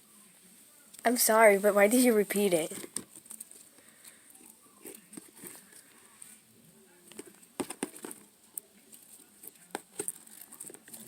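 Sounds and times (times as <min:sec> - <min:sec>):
handling noises: 0:02.4 - 0:06.3, 0:07.0 - 0:11.0.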